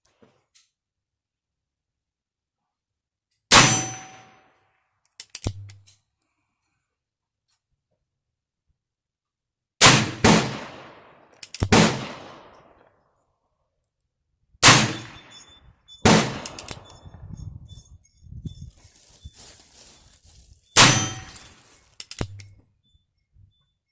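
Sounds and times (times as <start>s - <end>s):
revolver gunshots: 9.8s - 12.7s, 14.6s - 15.3s, 16.0s - 16.8s.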